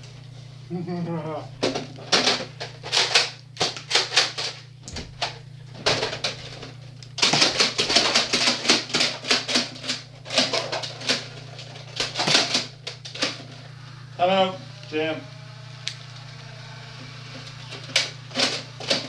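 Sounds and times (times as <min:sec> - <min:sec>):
low hum: 0:12.8 - 0:19.0.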